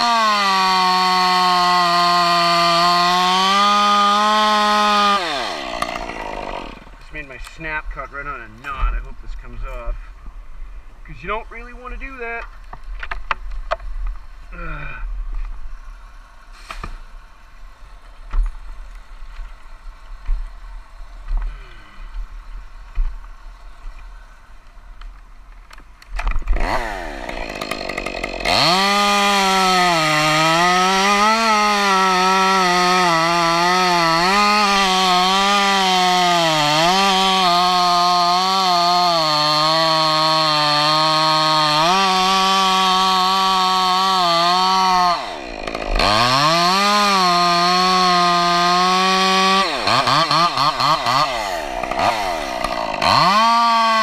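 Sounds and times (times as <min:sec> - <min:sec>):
chainsaw revving: 0:00.0 - 0:07.0, 0:26.5 - 0:54.0.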